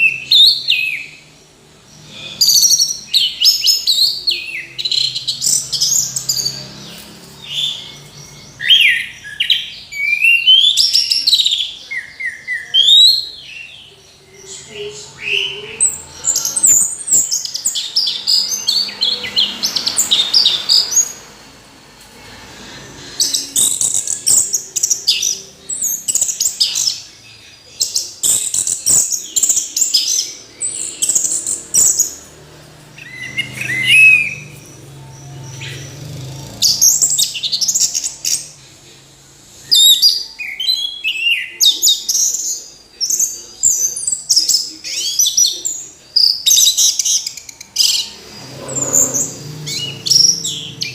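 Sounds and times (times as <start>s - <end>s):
thrush singing: 0.0s - 41.6s, 46.6s - 50.9s.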